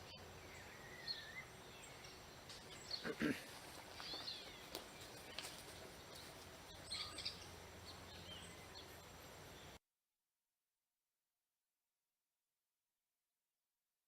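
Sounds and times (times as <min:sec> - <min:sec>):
faint outdoor background noise: 0:00.0 - 0:09.8.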